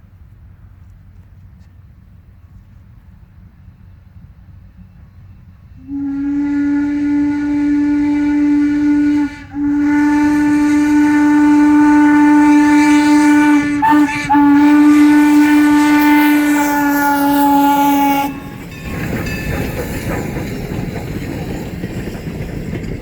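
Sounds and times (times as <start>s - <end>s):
steam locomotive whistle: 5.8s - 19.6s.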